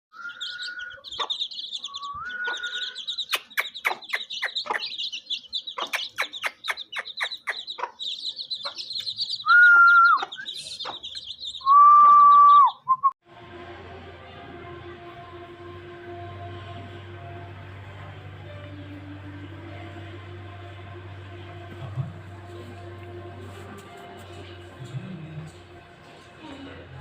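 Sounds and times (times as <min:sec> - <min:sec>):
birds chirping and twittering: 0:00.1 - 0:12.9
loud whistled bird calls: 0:00.1 - 0:13.1.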